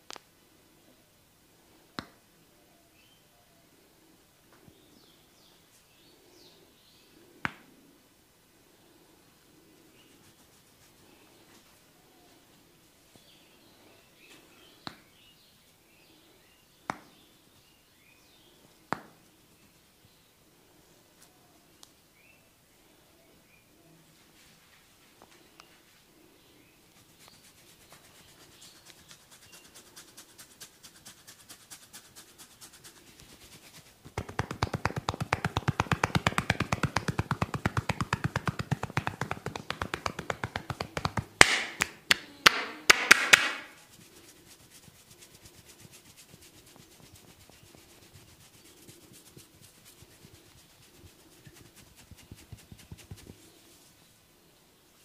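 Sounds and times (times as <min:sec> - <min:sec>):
soft scratching on head: 0:08.8 - 0:13.3, 0:24.0 - 0:41.4, 0:43.7 - 0:54.2
hands tapping on head: 0:16.9 - 0:17.1, 0:34.0 - 0:43.8, 0:45.8 - 0:53.4
loud sharp cracks: 0:41.3 - 0:43.8.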